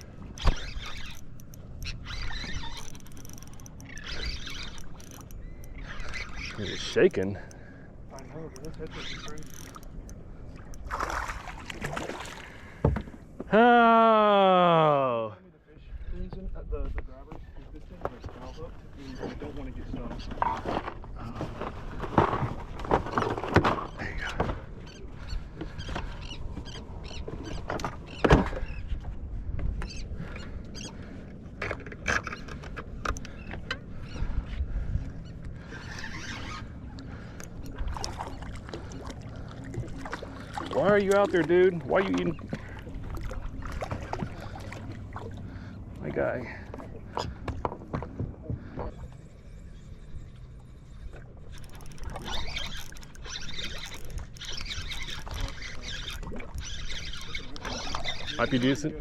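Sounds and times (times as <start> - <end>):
gear clicking and knocking: 0.0 - 10.9, 51.5 - 58.4
low boat and water background: 0.0 - 59.0
wind: 0.0 - 59.0.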